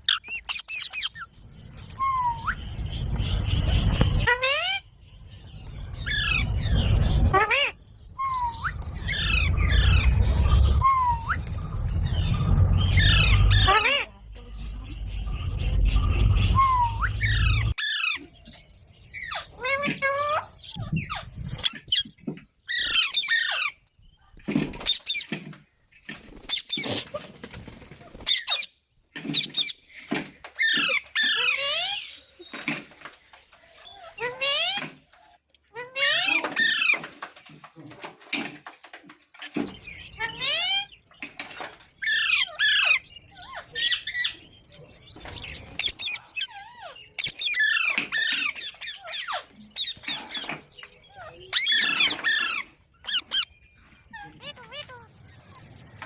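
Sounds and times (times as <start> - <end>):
baby parrots squawking: 45.8 - 53.5.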